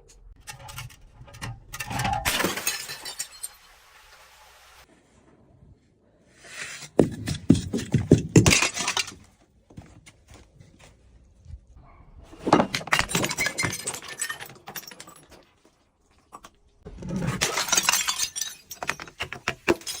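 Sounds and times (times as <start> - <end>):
glass bottles crushing: 2.0 - 3.8, 7.4 - 9.3, 12.4 - 16.5, 17.2 - 20.0.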